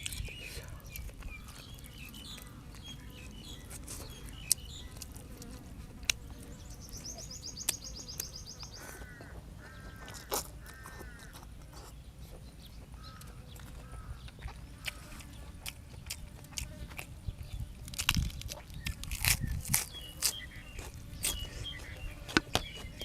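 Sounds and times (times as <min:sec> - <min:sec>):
high-pitched chirping calls: 0:06.3 - 0:09.0.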